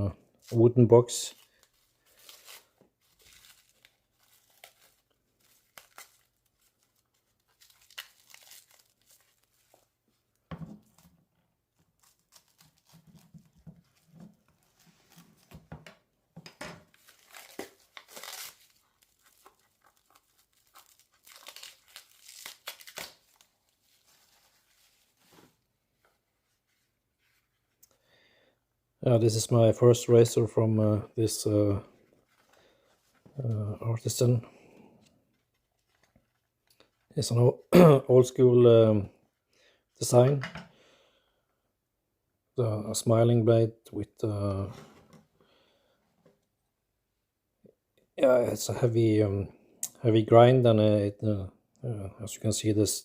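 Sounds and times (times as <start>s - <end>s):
packaging rustling and crinkling: 1.4s - 9.9s, 11.8s - 15.7s, 16.9s - 27.5s.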